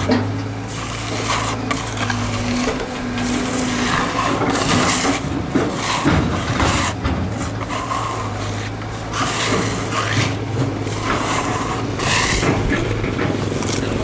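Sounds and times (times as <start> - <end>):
scraping on fresh concrete: 0.0 - 14.0
small engine humming: 0.0 - 14.0.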